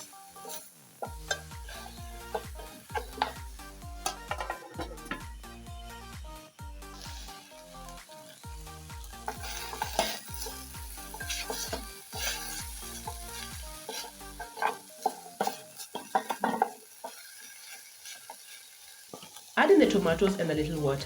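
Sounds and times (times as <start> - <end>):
meat and pepper sizzling in a pot: 0.0 - 21.0
spoon scraping and knocking a pot: 0.4 - 5.4, 9.1 - 19.4
background music with bass line: 1.0 - 14.8.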